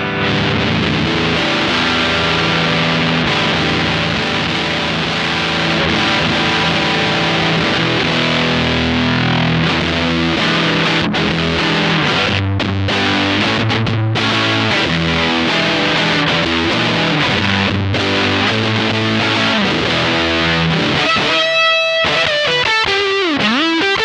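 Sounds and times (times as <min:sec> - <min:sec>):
fuzz-distorted electric guitar: 0:00.0 - 0:24.0.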